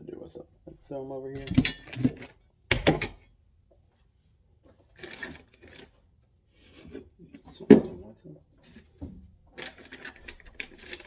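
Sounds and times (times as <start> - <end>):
metal parts clattering on workbench: 1.4 - 3.2.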